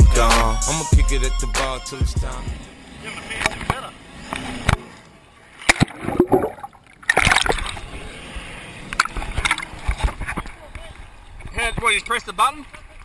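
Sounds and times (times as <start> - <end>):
water splashing and sloshing: 3.4 - 13.0.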